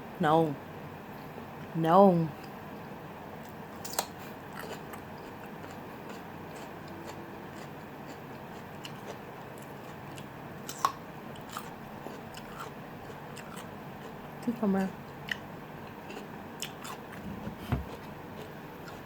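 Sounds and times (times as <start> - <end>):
person chewing food: 3.4 - 14.5, 15.1 - 19.0.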